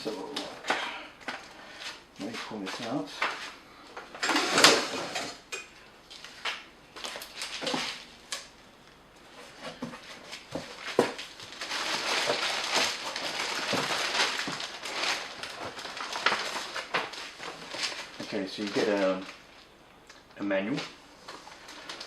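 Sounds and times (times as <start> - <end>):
packaging rustling: 6.1 - 8.5, 9.4 - 19.7, 21.2 - 22.0.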